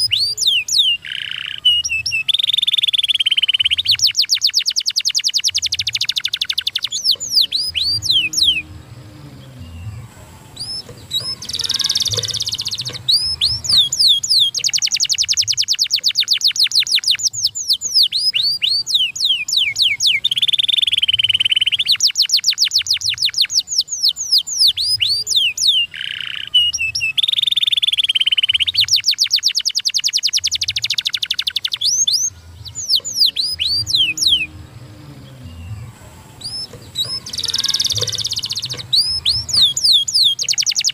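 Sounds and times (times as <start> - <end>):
canary singing: 0.0 - 40.9.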